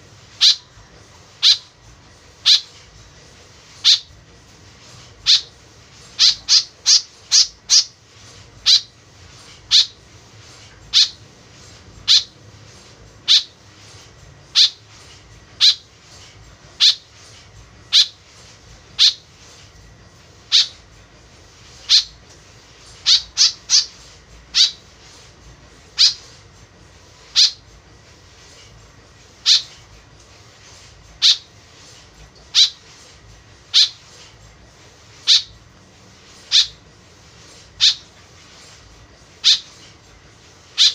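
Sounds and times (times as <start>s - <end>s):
bird calling: 0.4s - 0.7s, 1.4s - 1.7s, 2.4s - 2.7s, 3.8s - 4.1s, 5.2s - 5.5s, 6.2s - 8.0s, 8.6s - 9.0s, 9.7s - 10.0s, 10.9s - 11.2s, 12.0s - 12.4s, 13.2s - 13.6s, 14.5s - 14.8s, 15.6s - 15.8s, 16.8s - 17.1s, 17.9s - 18.2s, 19.0s - 19.2s, 20.5s - 20.8s, 21.8s - 22.2s, 23.0s - 24.8s, 25.9s - 26.3s, 27.3s - 27.6s, 29.4s - 29.7s, 31.2s - 31.5s, 32.5s - 32.8s, 33.7s - 34.0s, 35.2s - 35.6s, 36.5s - 36.8s, 37.8s - 38.1s, 39.4s - 39.8s.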